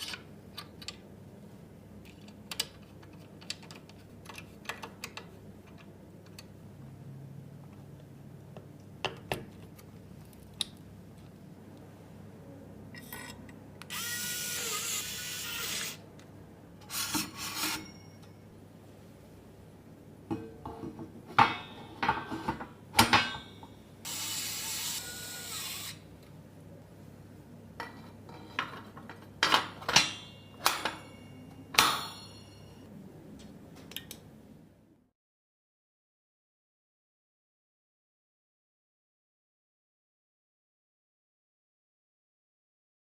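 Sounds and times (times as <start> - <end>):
clicks and clinks of parts and screws: 13.0 - 13.6
electric screwdriver whirring: 13.9 - 16.0, 24.1 - 26.0.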